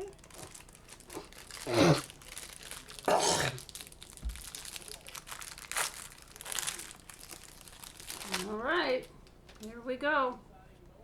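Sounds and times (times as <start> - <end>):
packaging being torn open: 0.2 - 8.5.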